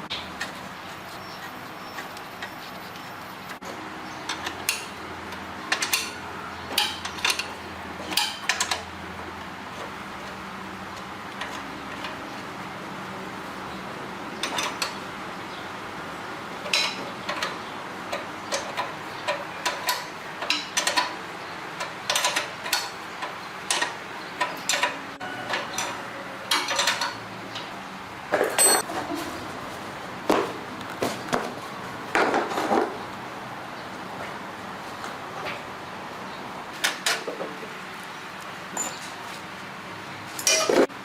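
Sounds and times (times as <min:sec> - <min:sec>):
metallic clinks and knocks: 0:28.4 - 0:28.9, 0:38.8 - 0:39.2.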